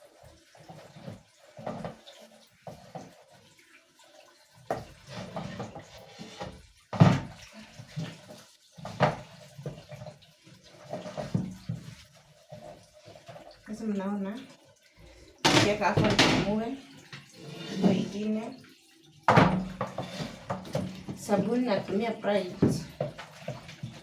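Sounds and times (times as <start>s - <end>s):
water splashing in sink: 0.0s - 24.0s
items knocking against sink: 4.7s - 10.1s, 15.4s - 18.1s, 19.3s - 24.0s.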